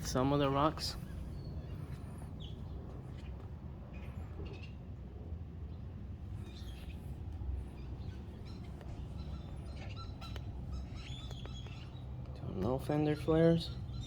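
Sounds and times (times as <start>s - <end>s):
steady low rumble: 0.0s - 14.0s
faint bird chirps: 6.3s - 14.0s.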